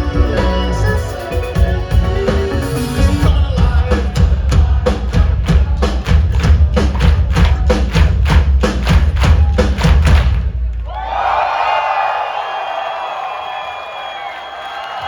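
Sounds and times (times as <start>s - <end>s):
live rock band: 0.0s - 9.8s
fast drum beat: 0.0s - 10.7s.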